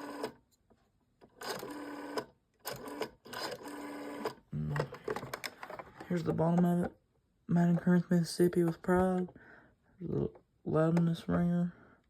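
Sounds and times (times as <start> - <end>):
rotary telephone dial whirring: 0.0 - 0.4, 1.3 - 5.8.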